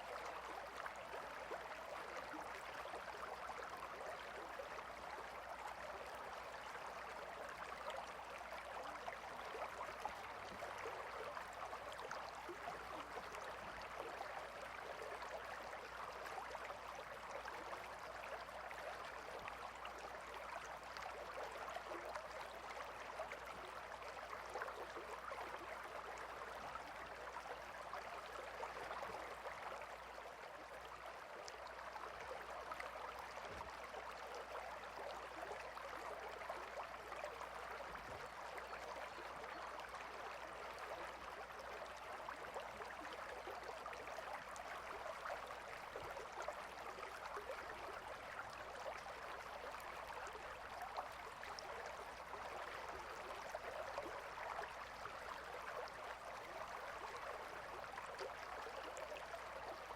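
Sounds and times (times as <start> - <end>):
river water babbling: 0.0 - 59.9.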